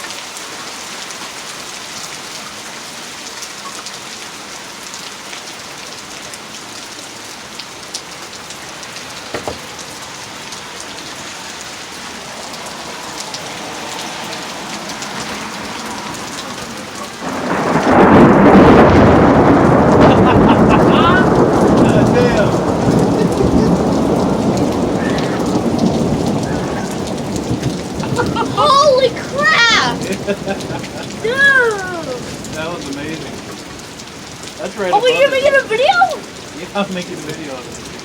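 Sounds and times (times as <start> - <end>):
steady rain falling: 0.0 - 38.0
thunder rumble: 12.0 - 34.4
loud thunderclap: 15.7 - 33.7.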